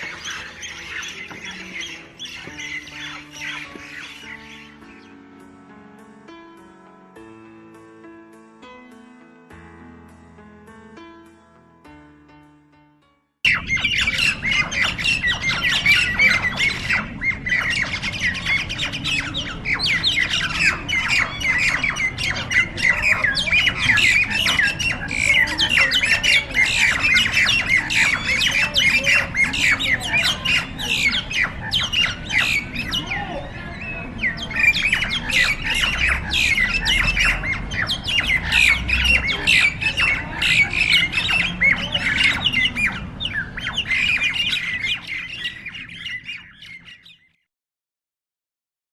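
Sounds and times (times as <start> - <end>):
mynas squawking: 0.0 - 5.1, 13.5 - 47.1.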